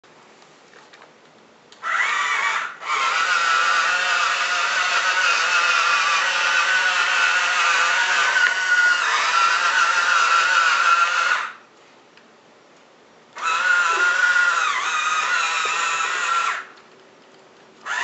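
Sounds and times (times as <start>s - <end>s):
small electric motor whining: 1.8s - 11.6s, 13.4s - 16.8s.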